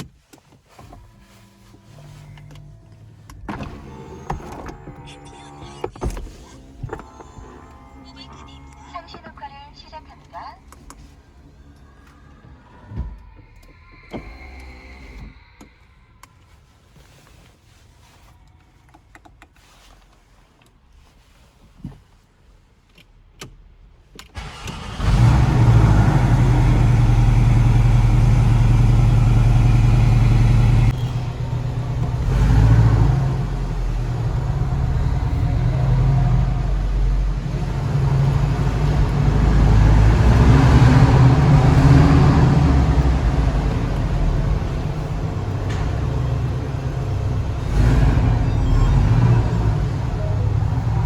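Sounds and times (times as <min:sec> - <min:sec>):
car engine running: 0:00.7 - 0:15.4, 0:24.4 - 0:51.0.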